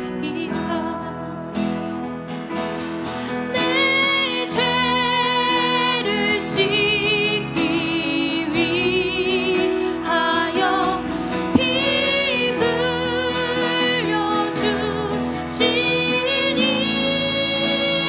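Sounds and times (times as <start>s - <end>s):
woman singing a hymn: 0.0s - 1.7s, 3.5s - 18.0s
keyboard accompaniment: 0.0s - 18.0s.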